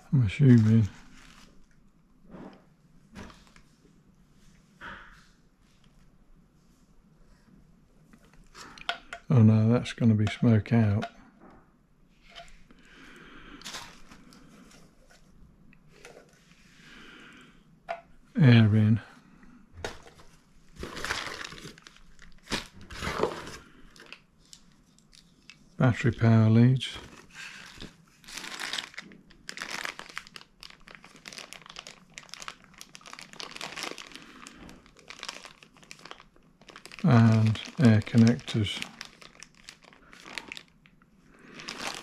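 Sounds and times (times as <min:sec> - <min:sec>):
packaging rustling and crinkling: 0:00.3 - 0:01.8, 0:13.6 - 0:16.4, 0:19.8 - 0:25.7, 0:26.8 - 0:42.0.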